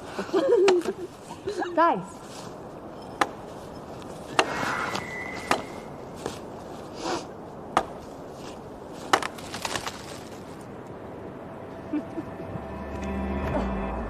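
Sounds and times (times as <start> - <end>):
steady background hiss: 0.0 - 14.0
footsteps with sharp cracks: 2.3 - 11.0.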